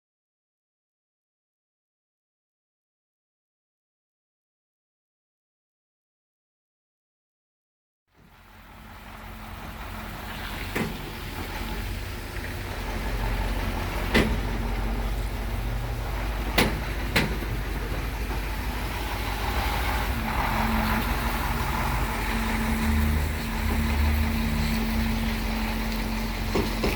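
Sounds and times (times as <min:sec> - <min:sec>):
heavy engine rumble: 0:08.2 - 0:26.9
sharp knocks: 0:14.1 - 0:14.7.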